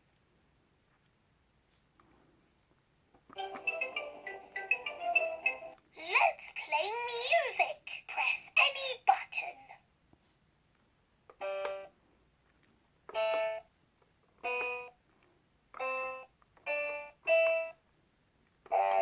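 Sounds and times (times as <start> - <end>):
toy laptop electronic notes: 3.4 - 5.8, 13.1 - 13.6, 14.4 - 15.0.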